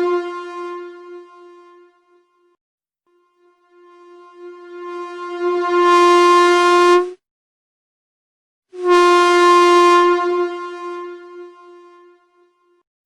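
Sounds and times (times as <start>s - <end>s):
truck air horn blasts: 0.0s - 2.2s, 3.5s - 7.2s, 8.7s - 12.8s.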